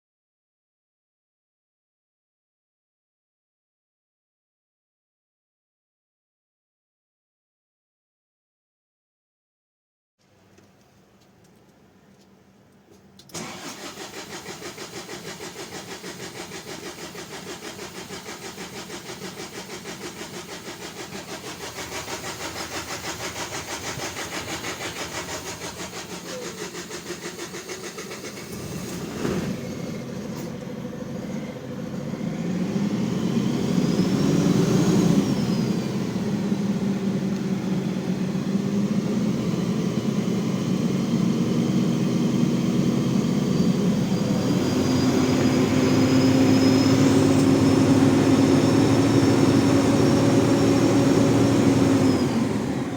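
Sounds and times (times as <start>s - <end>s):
diesel engine cranking on starter: 13.2s - 52.9s
engine revving and idling: 13.4s - 52.9s.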